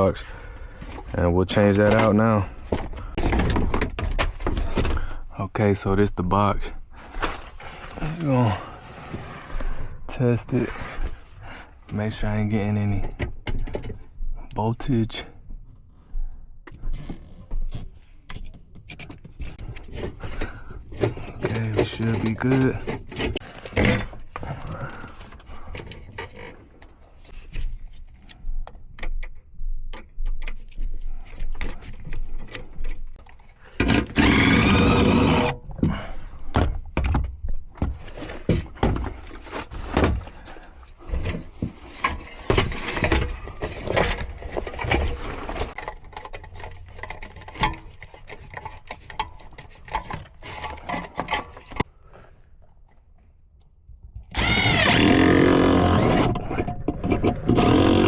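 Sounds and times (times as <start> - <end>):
power tool running: 33.9 - 35.6, 54.3 - 56.4, 57.4 - 58.0.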